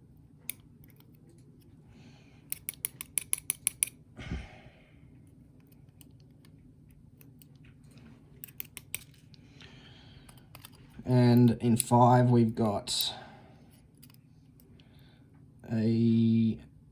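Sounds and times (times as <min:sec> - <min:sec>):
sharp metal clicks: 0:02.5 - 0:04.0, 0:08.4 - 0:09.3.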